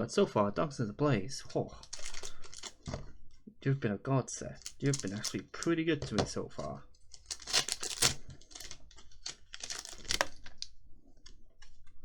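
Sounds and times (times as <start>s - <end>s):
trading cards clicking and rustling: 1.8s - 2.9s, 4.6s - 5.7s, 7.1s - 10.6s.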